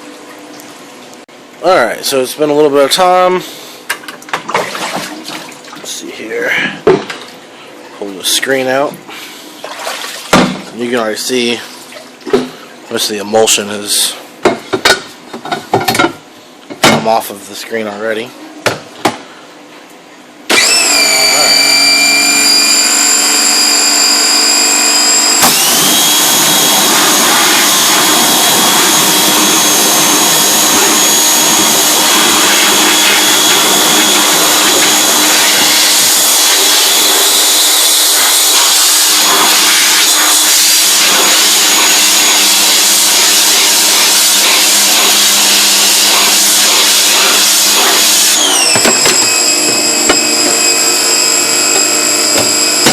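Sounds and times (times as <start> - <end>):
pressure washer motor whine: 20.5 - 52.9.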